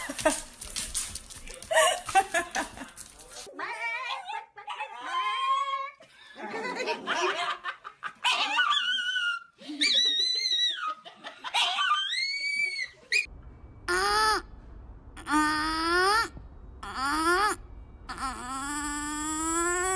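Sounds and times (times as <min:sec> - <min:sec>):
laughter: 0:00.0 - 0:00.6, 0:01.6 - 0:03.1, 0:06.0 - 0:09.0, 0:09.6 - 0:13.2.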